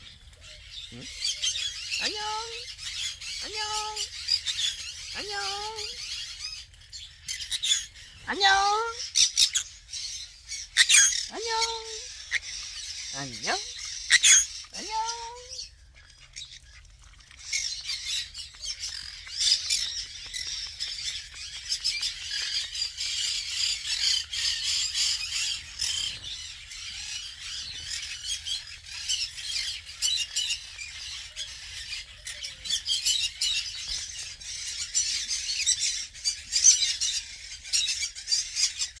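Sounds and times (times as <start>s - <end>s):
parrots squawking: 0.6s - 6.4s, 7.4s - 9.8s, 10.6s - 16.4s.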